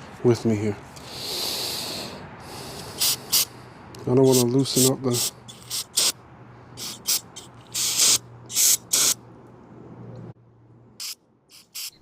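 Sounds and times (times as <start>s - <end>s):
aerosol spray bursts: 3.0s - 3.5s, 4.3s - 6.2s, 6.8s - 9.2s, 11.0s - 12.0s.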